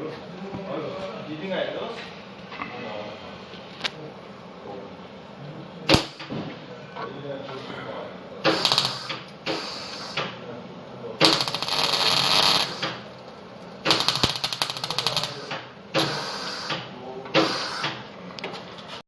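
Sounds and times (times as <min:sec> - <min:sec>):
electric welding arc crackling: 0:08.5 - 0:10.1, 0:11.2 - 0:13.2, 0:13.8 - 0:16.6.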